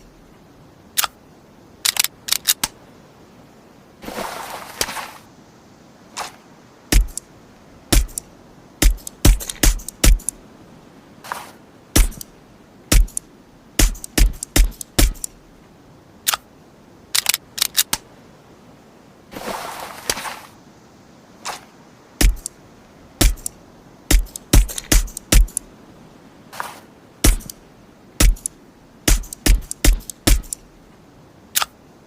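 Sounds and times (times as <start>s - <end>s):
hiss: 11.2s - 12.3s, 12.9s - 13.2s, 21.4s - 22.6s, 26.5s - 27.6s, 28.2s - 30.6s.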